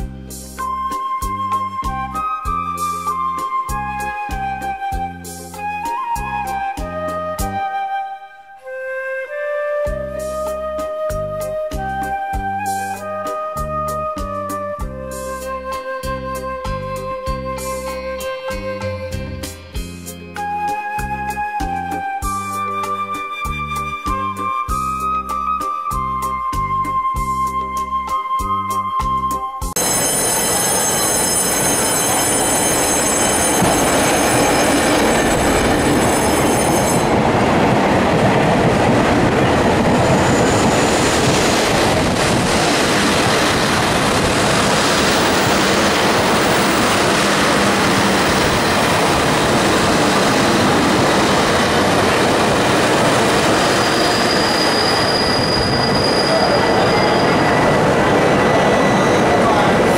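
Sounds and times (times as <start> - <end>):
train wheels rumbling on rails: 29.8 - 59.9.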